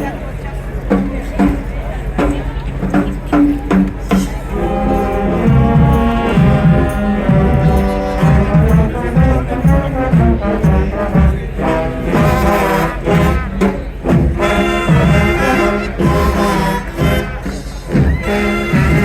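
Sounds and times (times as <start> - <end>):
steady drum beat: 0.8 - 19.0
horns playing melody: 3.9 - 19.0.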